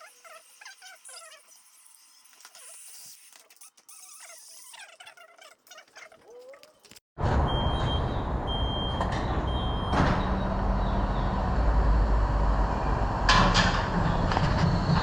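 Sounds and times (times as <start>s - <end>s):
car road and engine rumble: 7.2s - 15.0s.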